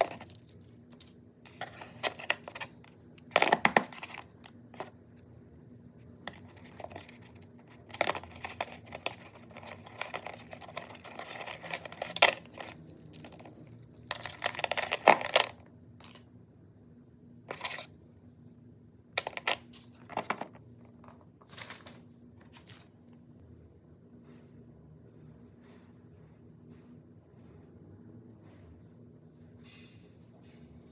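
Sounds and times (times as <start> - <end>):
plastic and paper rustling: 0.0 - 5.1, 6.3 - 16.2, 17.5 - 17.9, 19.2 - 22.9.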